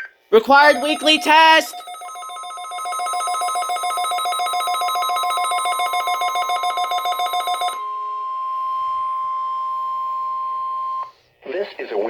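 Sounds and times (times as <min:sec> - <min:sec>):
steady high tone: 0:00.5 - 0:10.9.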